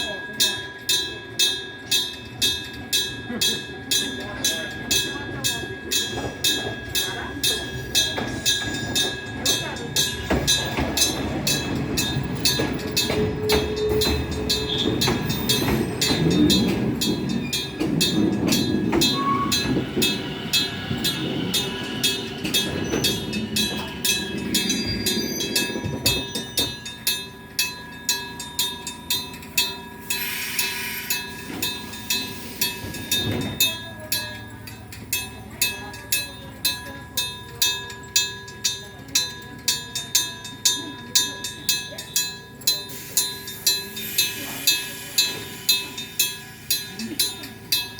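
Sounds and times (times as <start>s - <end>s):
level-crossing bell ringing: 0.0s - 47.9s
train rumbling past: 1.0s - 38.4s.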